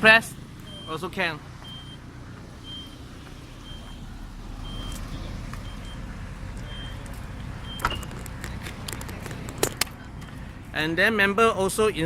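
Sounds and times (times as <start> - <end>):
short high warning beeps: 0.7 - 1.0, 1.6 - 2.0, 2.6 - 3.0, 4.6 - 6.1, 6.7 - 8.0.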